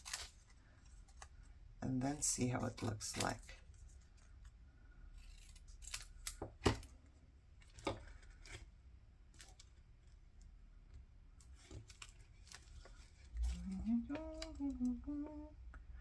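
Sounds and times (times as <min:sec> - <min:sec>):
scissors snipping paper: 0:00.0 - 0:01.3, 0:02.0 - 0:03.6, 0:11.4 - 0:15.0.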